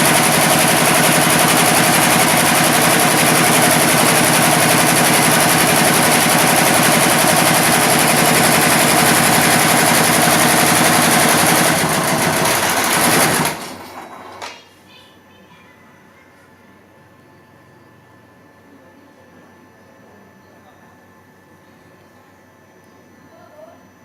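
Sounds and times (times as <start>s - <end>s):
embroidery machine needle clatter: 0.0s - 14.4s.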